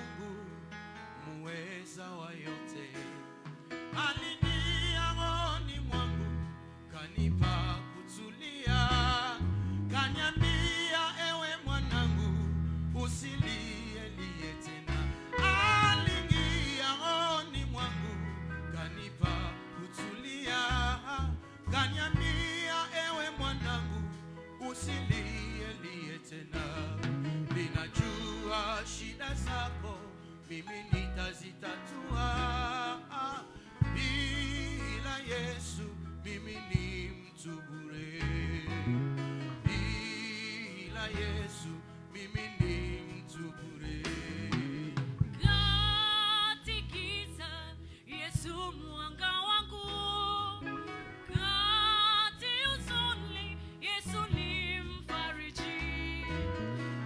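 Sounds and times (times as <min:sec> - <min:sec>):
band with bass and guitar: 0:03.0 - 0:57.0
person singing: 0:07.0 - 0:50.7, 0:51.3 - 0:57.0
person singing wavering voice: 0:15.2 - 0:17.2.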